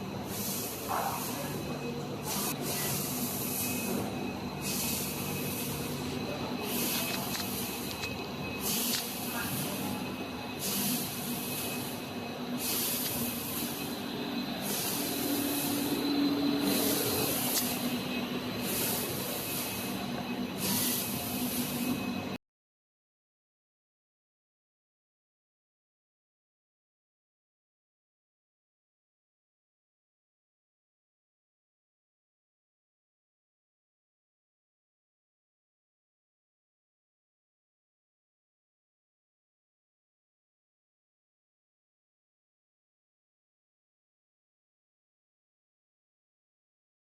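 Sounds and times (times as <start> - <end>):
machine humming: 0.0 - 22.4
compressed air hiss: 0.3 - 1.6, 2.2 - 3.9, 4.6 - 5.9, 8.6 - 9.9, 10.6 - 20.0, 20.6 - 21.8.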